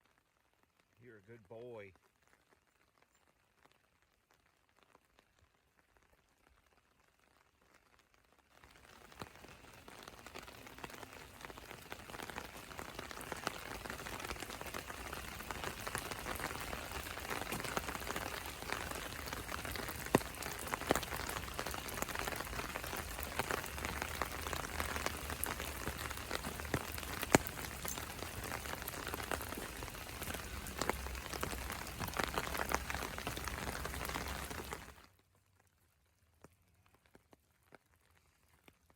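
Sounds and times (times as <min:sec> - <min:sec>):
steady rain falling: 0:00.0 - 0:38.9
drops ticking: 0:10.8 - 0:34.9.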